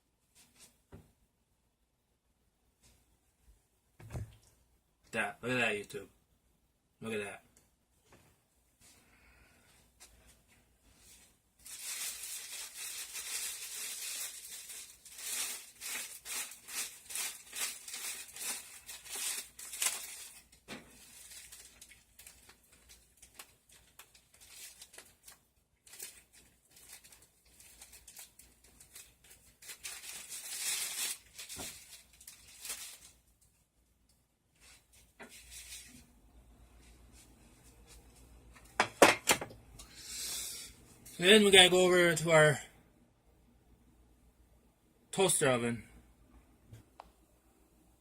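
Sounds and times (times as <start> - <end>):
plastic packaging crinkling: 11.6 - 33.4.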